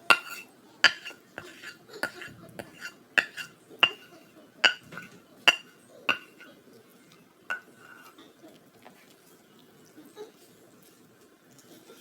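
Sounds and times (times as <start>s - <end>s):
metal utensil clinking cookware: 0.0s - 6.6s, 7.5s - 8.2s.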